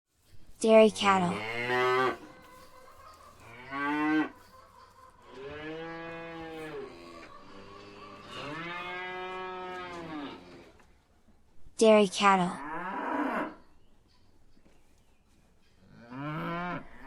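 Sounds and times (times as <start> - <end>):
cows mooing: 0.9 - 2.6, 3.3 - 4.4, 5.3 - 10.8, 12.6 - 13.6, 15.9 - 17.0.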